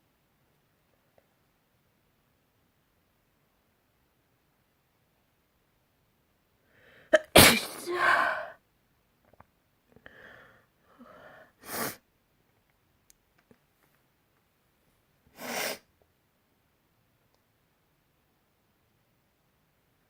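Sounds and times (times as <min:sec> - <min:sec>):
breathy in-breaths: 0:06.6 - 0:07.2, 0:07.8 - 0:08.6, 0:10.0 - 0:11.6
person sneezing: 0:07.1 - 0:08.6, 0:15.4 - 0:15.9.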